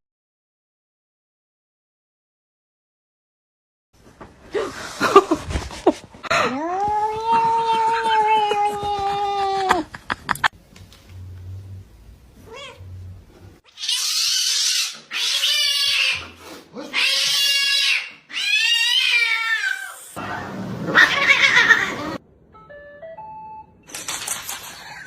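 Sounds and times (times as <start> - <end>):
cat yowling: 6.6 - 9.6, 13.7 - 20.2.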